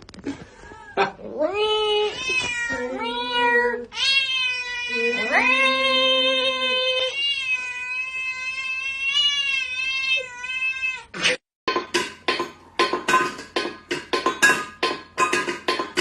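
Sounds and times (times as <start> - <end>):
cat yowling: 1.0 - 11.2.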